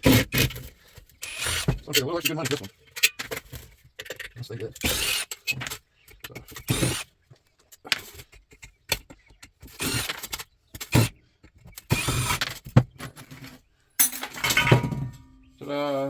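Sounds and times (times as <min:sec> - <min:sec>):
metal fan parts clattering: 0:13.0 - 0:15.5.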